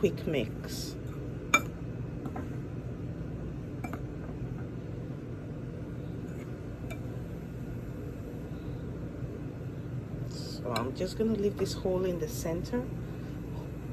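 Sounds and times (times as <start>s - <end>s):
steady low hum: 0.0s - 13.9s.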